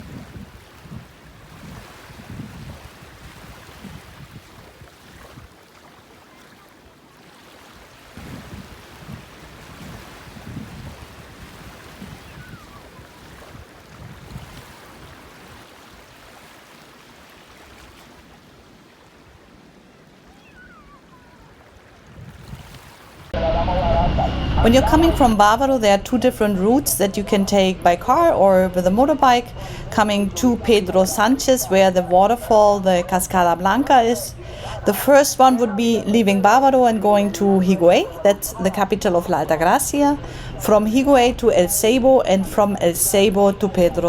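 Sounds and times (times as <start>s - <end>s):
wind gusting against microphone: 0.0s - 5.5s, 8.2s - 15.6s, 20.6s - 44.0s
steady rushing noise: 23.3s - 44.0s.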